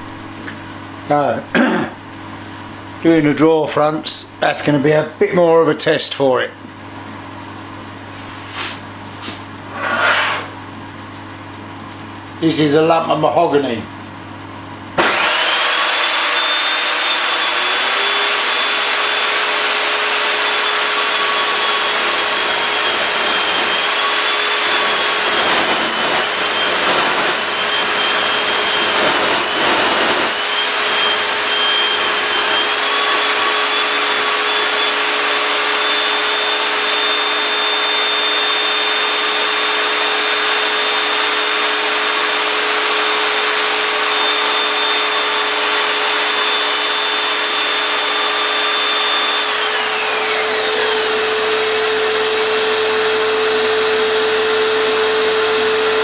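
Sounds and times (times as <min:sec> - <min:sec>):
saw blade cutting wood: 0:09.7 - 0:10.6, 0:15.0 - 0:56.0
table saw motor whining: 0:09.7 - 0:10.6, 0:15.0 - 0:56.0.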